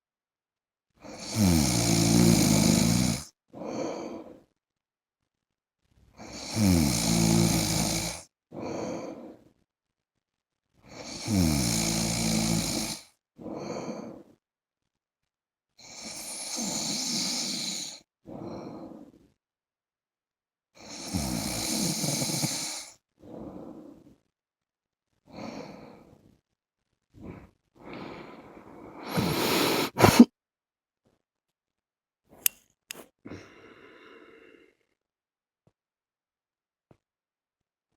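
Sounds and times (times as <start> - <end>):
man snoring: 1.1 - 3.3, 6.2 - 8.8, 10.9 - 13.0, 16.0 - 18.0, 20.9 - 22.9, 28.9 - 30.3
sharp breath: 28.3 - 30.3.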